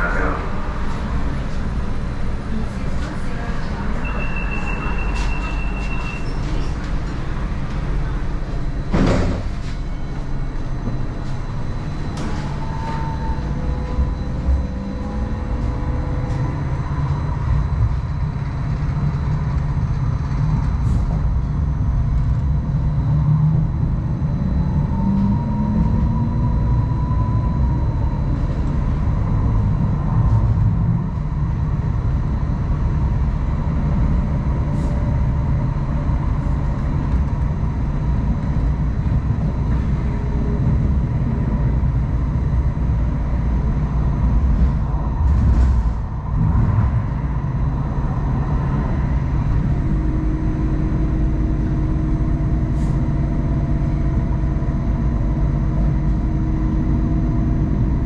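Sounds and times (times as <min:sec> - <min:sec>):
wheels rumbling on track: 0:00.0 - 0:58.0.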